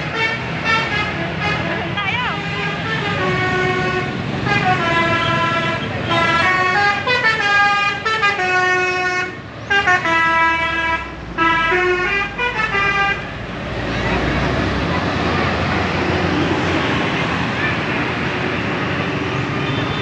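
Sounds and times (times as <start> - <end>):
bus musical horn: 0.0 - 13.4.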